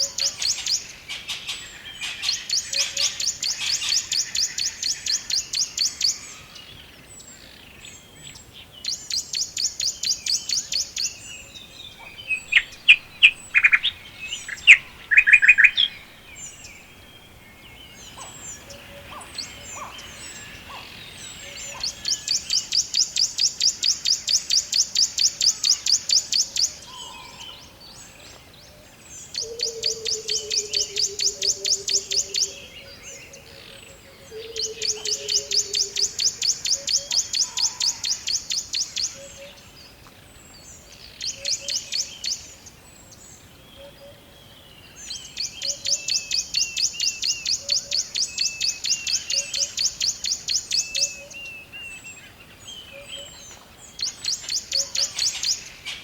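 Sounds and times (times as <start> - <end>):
songbirds singing: 0.0 - 56.0
sharp bird chirps: 11.9 - 19.9
fast high bird trill: 12.2 - 17.4.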